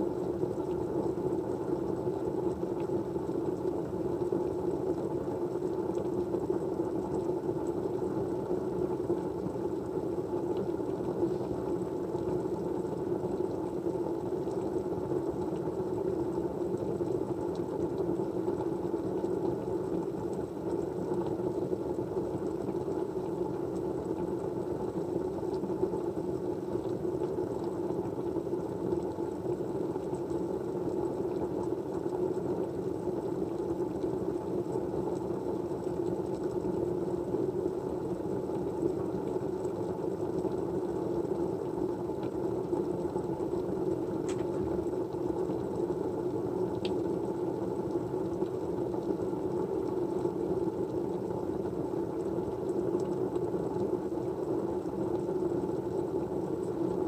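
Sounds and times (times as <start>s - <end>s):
faint ticks: 46.7s - 47.0s.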